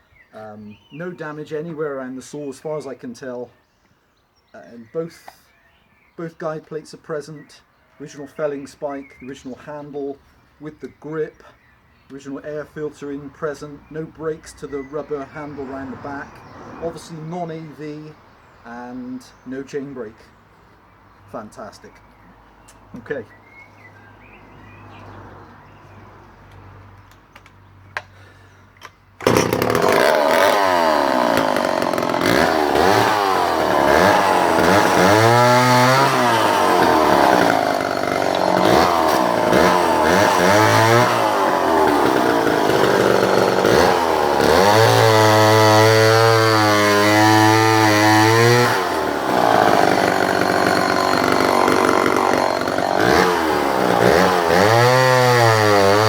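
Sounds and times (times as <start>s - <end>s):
chainsaw engine revving: 29.2s - 56.0s.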